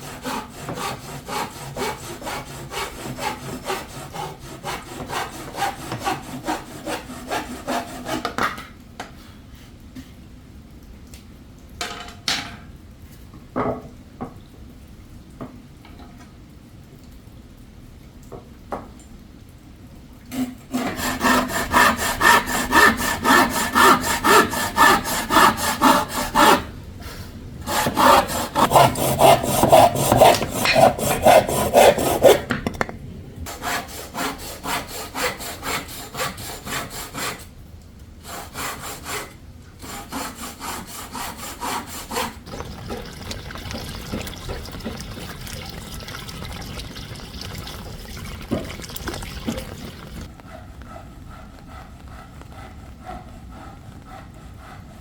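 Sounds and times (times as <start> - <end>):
hand saw cutting wood: 0.0 - 8.6, 20.3 - 26.7, 27.6 - 32.5, 33.5 - 37.5, 38.2 - 42.6.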